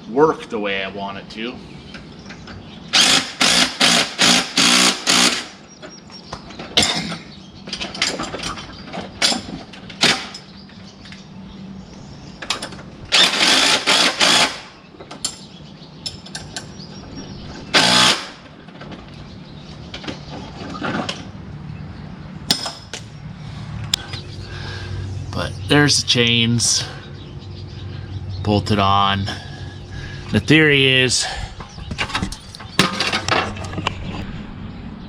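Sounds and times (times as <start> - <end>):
impact wrench bursts: 2.9 - 5.7, 9.3 - 10.5, 13.1 - 14.8, 17.7 - 18.5.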